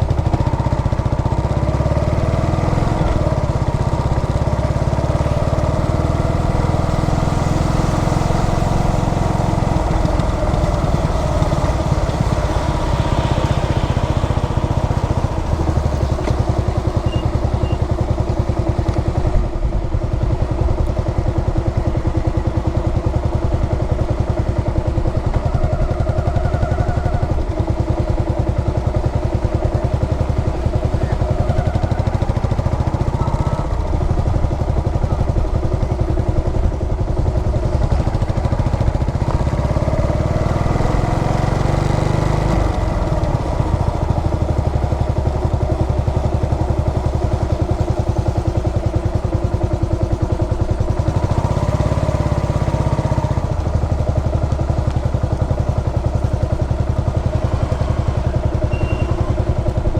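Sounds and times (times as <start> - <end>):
motorcycle engine running: 0.0 - 59.9.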